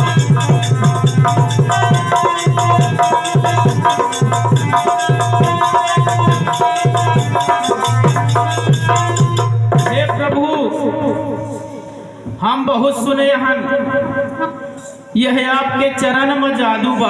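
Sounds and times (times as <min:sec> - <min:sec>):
quick steady drum strokes: 0:00.0 - 0:12.4.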